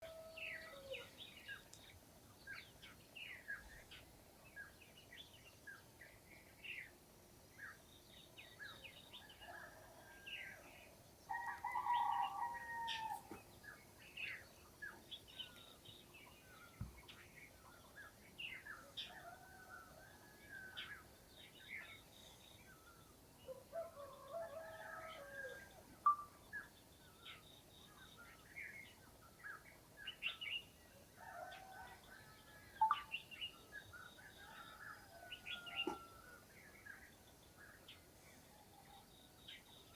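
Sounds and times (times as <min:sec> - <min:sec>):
rooster crowing: 0:11.3 - 0:13.3
small birds chirping: 0:24.8 - 0:39.9
faint crow-like call: 0:34.4 - 0:36.4.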